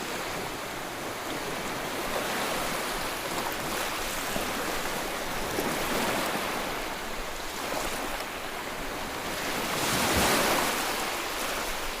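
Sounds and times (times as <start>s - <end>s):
sea waves breaking on beach: 0.0s - 12.0s.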